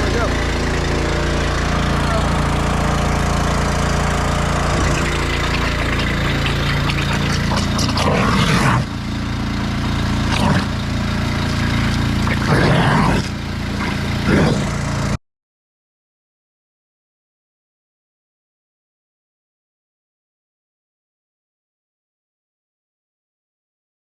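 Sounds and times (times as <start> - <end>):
pump rushing noise: 0.0 - 15.1
small gasoline engine running: 0.0 - 15.2.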